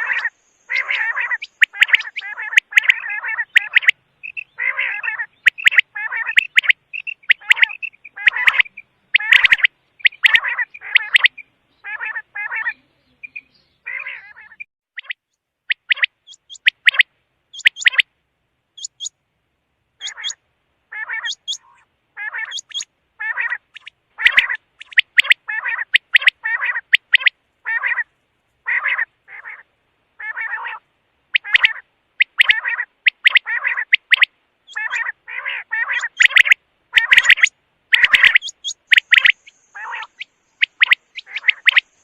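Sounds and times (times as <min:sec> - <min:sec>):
quail buzzy calls: 0:00.0 - 0:18.1, 0:18.8 - 0:19.1, 0:20.0 - 0:42.0.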